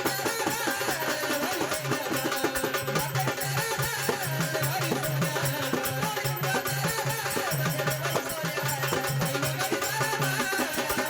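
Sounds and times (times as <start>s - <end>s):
quick percussion beat: 0.0s - 11.0s.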